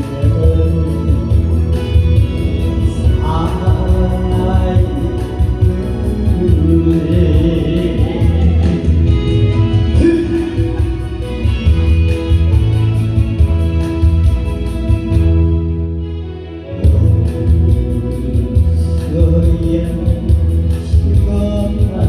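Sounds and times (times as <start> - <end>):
person singing with band: 0.0 - 13.4.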